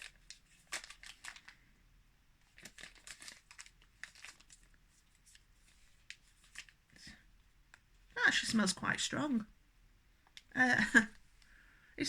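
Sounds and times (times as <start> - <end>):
packaging crinkling: 0.0 - 1.6, 2.5 - 6.8.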